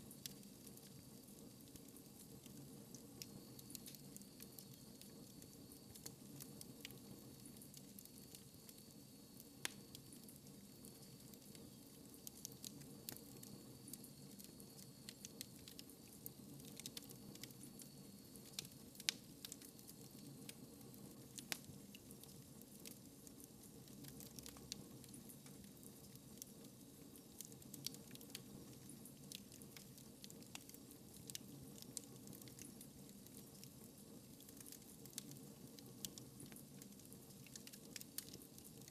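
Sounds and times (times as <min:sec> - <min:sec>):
steady hiss of burning: 0:00.0 - 0:38.9
wood fire crackling: 0:00.0 - 0:38.9.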